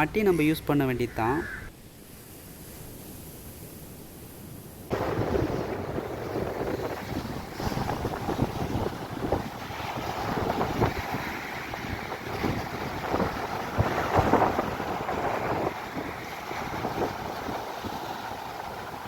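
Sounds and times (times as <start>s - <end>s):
sea rushing: 1.9s - 19.0s
wind buffeting microphone: 4.9s - 19.0s.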